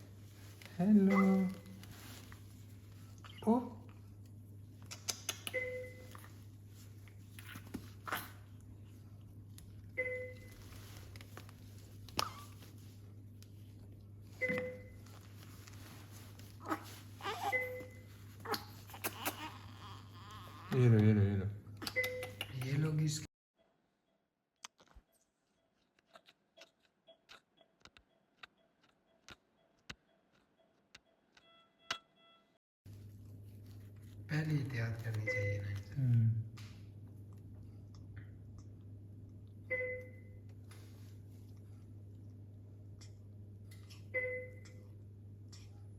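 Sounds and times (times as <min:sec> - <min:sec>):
steady low hum: 0:32.9 - 0:45.9.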